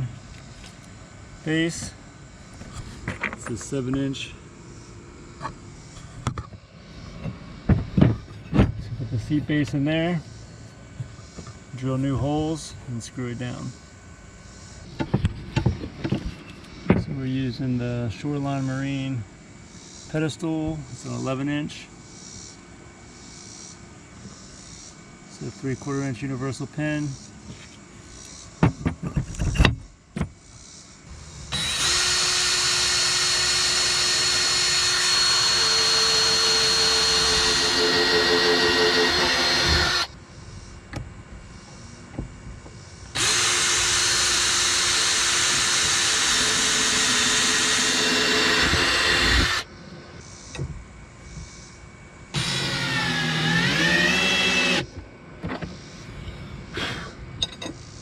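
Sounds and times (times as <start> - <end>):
power drill running: 31.5 - 40.2, 43.1 - 49.7, 52.3 - 54.9.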